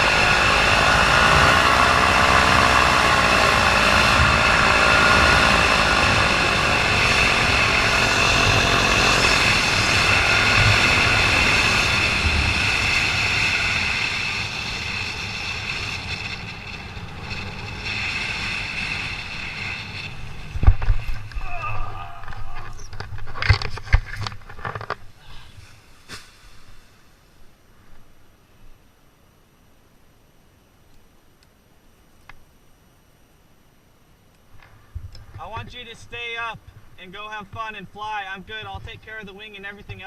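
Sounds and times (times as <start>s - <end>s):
wind rush: 0.0s - 24.2s
paramotor engine and propeller: 0.0s - 25.0s.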